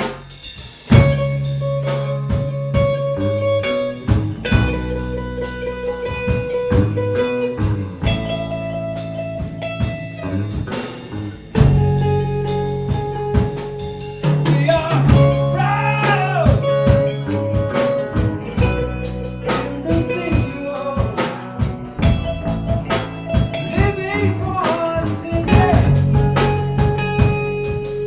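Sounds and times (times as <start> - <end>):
sustained low notes: 0.0 - 24.6, 25.2 - 27.8
drum kit beat: 0.0 - 28.0
electric guitar: 0.0 - 28.0
person singing: 14.4 - 17.7, 19.4 - 21.5, 23.6 - 26.2.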